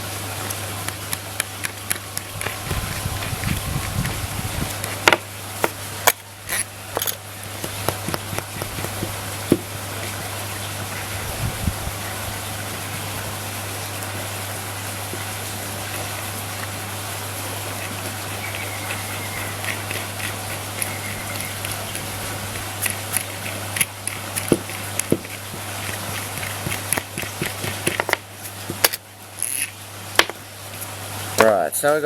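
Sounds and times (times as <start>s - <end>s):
metal parts clicking and knocking: 6.0s - 7.2s.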